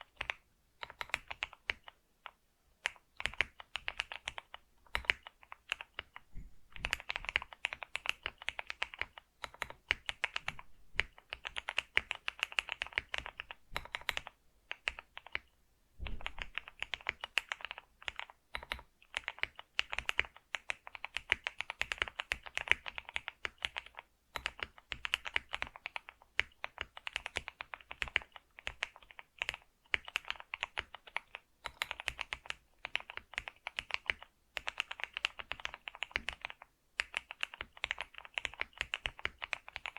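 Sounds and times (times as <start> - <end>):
keyboard key clicks: 2.9 - 15.4, 16.0 - 26.0.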